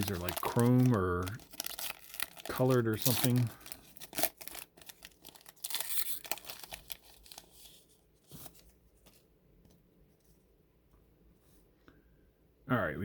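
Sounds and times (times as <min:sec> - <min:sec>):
wrapper tearing and crinkling: 0:00.0 - 0:07.8.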